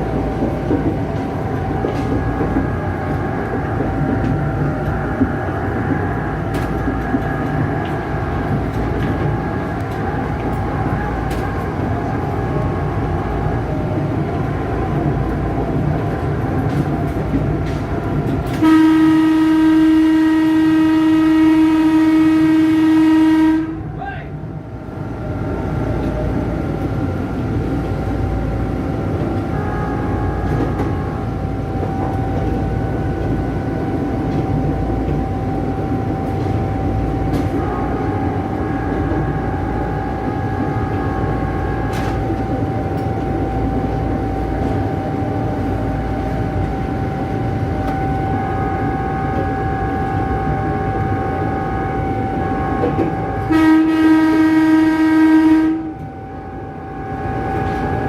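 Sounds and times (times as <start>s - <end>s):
train wheels rumbling on track: 0.0s - 58.0s
train electric horn: 18.4s - 24.0s, 29.2s - 32.6s, 37.2s - 43.2s, 47.9s - 58.0s.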